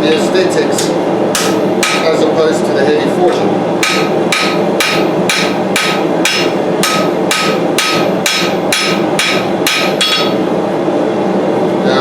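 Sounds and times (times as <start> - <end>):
hammer striking blade on anvil: 1.4 - 2.1, 3.8 - 10.4.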